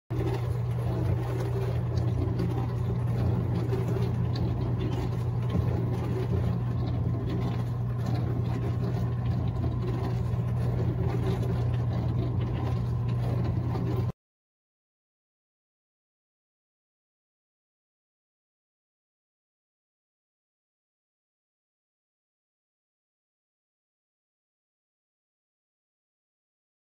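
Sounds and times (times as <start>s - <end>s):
low motor hum: 0.1s - 14.2s.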